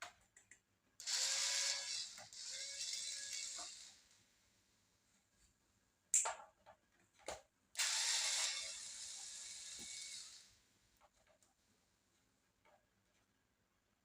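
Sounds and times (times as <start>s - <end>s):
electric screwdriver whirring: 1.0s - 4.0s, 7.8s - 10.5s.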